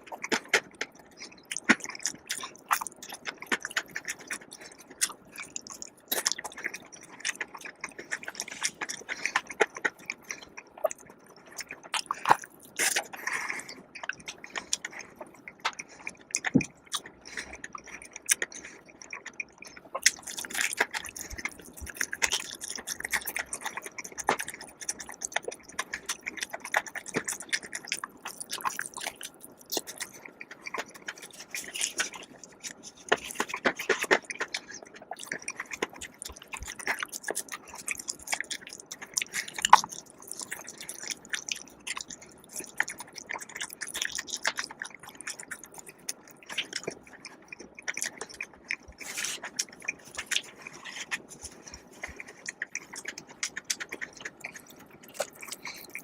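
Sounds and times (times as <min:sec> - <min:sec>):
chewing and biting food: 0:00.0 - 0:56.0
wet mouth clicks: 0:15.5 - 0:56.0.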